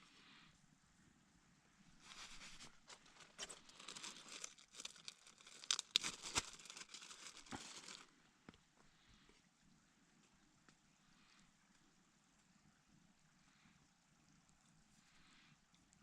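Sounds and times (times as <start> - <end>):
food packaging crinkling and tearing: 2.0 - 8.1.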